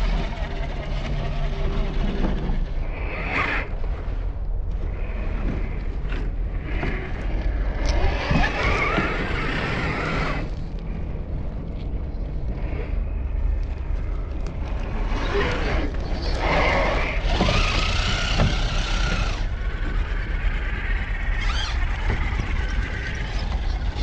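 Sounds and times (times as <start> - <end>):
toy truck motors whining: 0.0 - 11.1, 11.9 - 24.0
low rumble: 0.0 - 24.0.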